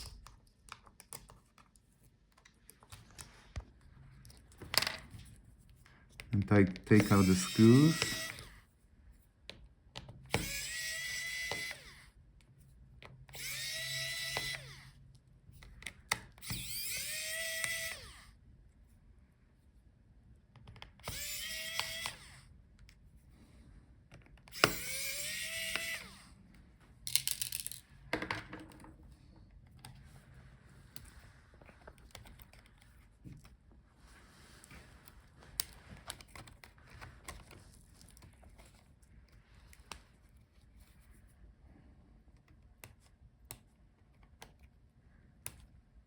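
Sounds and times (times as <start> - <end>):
electric screwdriver whirring: 6.7 - 8.6, 10.3 - 12.1, 13.2 - 15.0, 16.1 - 18.4, 20.9 - 22.5, 24.4 - 26.4
clicks of screws and tools: 27.1 - 29.0.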